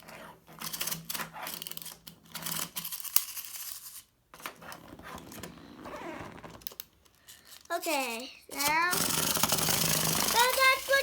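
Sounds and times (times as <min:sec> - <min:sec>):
clockwork toy clicking: 0:08.5 - 0:11.0.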